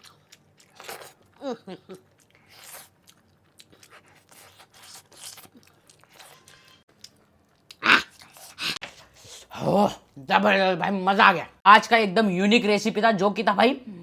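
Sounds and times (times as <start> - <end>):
wet chewing and smacking: 0.0 - 8.8
breathy mouth sounds: 7.7 - 9.5.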